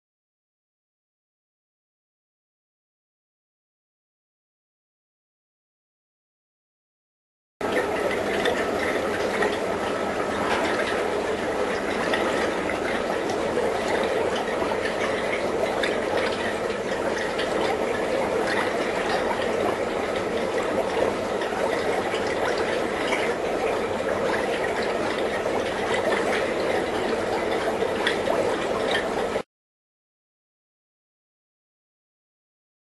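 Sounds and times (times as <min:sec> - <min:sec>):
fizz of fermentation bubbles: 0:07.6 - 0:29.4.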